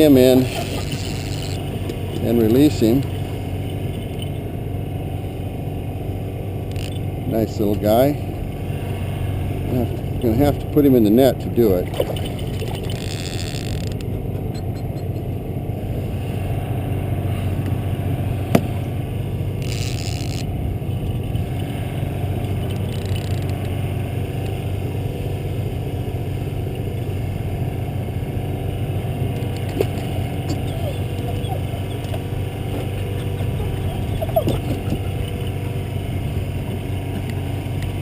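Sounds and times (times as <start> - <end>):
boat motor humming: 0.0 - 38.0.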